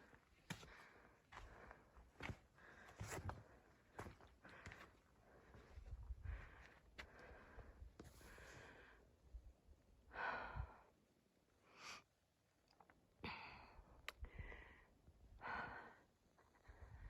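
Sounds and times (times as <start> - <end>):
person breathing hard: 10.1 - 10.9.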